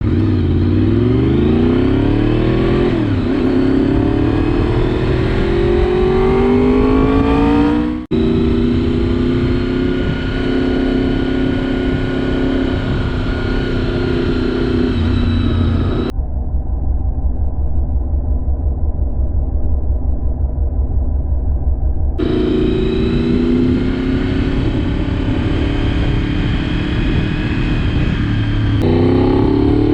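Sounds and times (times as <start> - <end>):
motorcycle engine accelerating: 0.0 - 16.1, 22.2 - 29.9.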